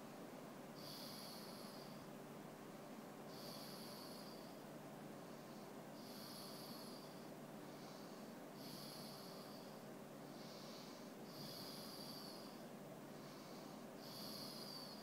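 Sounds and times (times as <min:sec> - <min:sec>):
dog snoring: 0:00.8 - 0:02.0, 0:03.3 - 0:04.5, 0:06.0 - 0:07.2, 0:08.6 - 0:09.7, 0:10.4 - 0:12.6, 0:13.3 - 0:15.0.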